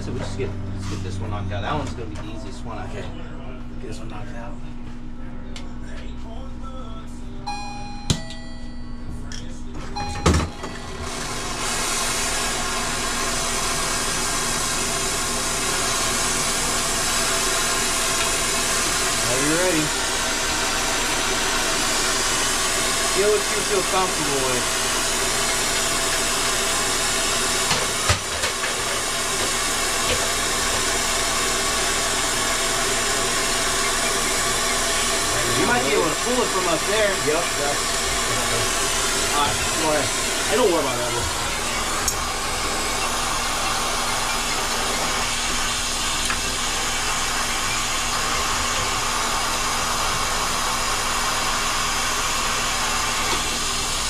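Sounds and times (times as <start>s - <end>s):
torch flame hissing: 11.1s - 54.0s.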